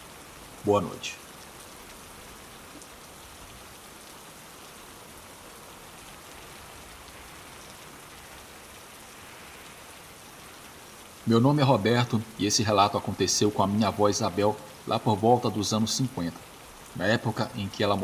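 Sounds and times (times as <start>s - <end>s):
steady rain falling: 0.0s - 18.0s.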